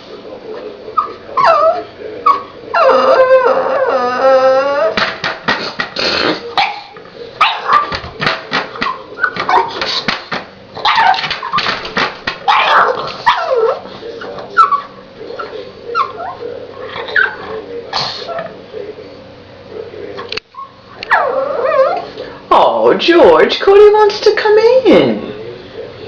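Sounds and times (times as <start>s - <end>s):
dog whining and yipping: 1.0s - 5.0s, 12.5s - 13.8s, 20.5s - 22.1s
dog barking: 6.6s - 8.0s, 10.8s - 11.6s, 12.4s - 13.8s.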